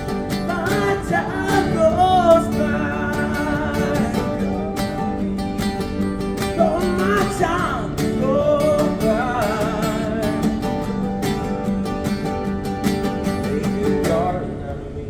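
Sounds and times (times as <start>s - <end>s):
person singing wordlessly: 0.0s - 5.8s, 6.5s - 10.8s, 13.4s - 15.0s
acoustic guitar playing: 0.0s - 15.0s.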